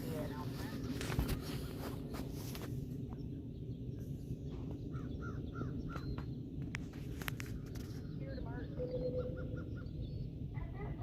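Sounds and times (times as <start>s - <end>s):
low background rumble: 0.0s - 11.0s
bird calling: 4.5s - 6.4s, 7.4s - 11.0s.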